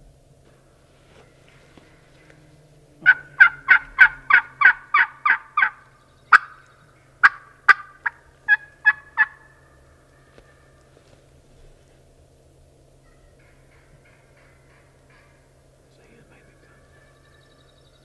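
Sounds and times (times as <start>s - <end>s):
turkey yelping: 3.0s - 11.2s, 13.0s - 15.7s, 16.3s - 17.8s.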